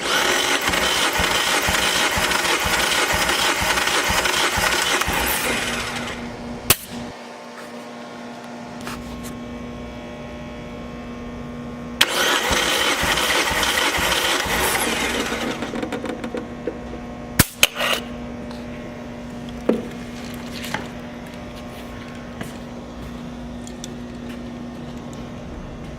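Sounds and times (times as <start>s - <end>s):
engine cranking on starter: 0.0s - 6.3s, 12.0s - 16.3s.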